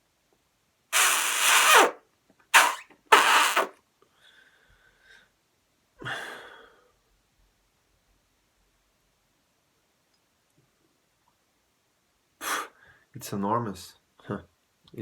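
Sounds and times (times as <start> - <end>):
person sneezing: 2.6 - 3.7, 12.4 - 12.8
soft breath: 4.1 - 5.4.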